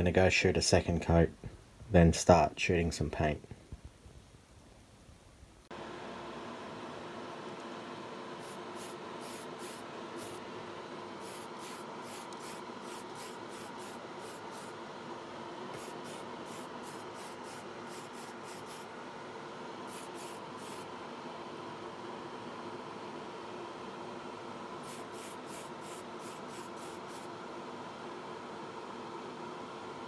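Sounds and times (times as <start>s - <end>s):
extractor fan humming: 0.0s - 30.0s
spray paint bursts: 8.4s - 10.4s, 11.2s - 14.8s, 15.8s - 18.9s, 19.9s - 20.8s, 24.8s - 27.3s.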